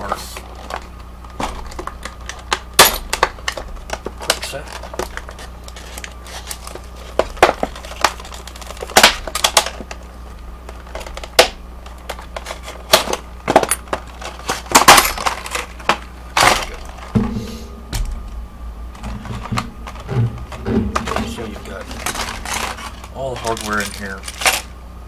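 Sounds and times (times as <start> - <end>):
packaging crackling and snapping: 0.4 - 17.1, 18.9 - 24.8
dull knocks: 17.1 - 21.7.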